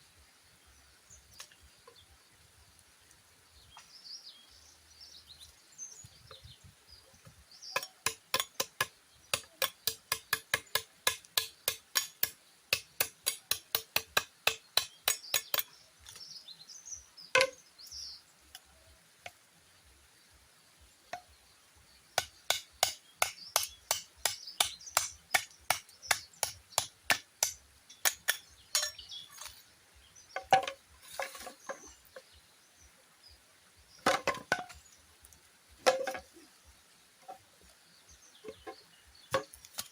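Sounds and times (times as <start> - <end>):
chopping strikes on bamboo: 7.7 - 16.2, 17.3 - 17.6, 22.2 - 29.5, 30.4 - 31.9, 34.0 - 34.8, 38.4 - 39.9.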